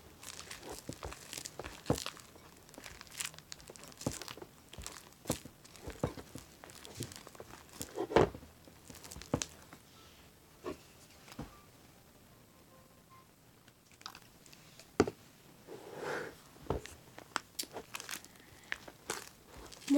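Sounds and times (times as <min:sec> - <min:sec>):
slime kneaded with sticky crackles: 0:00.0 - 0:09.7, 0:16.8 - 0:19.9.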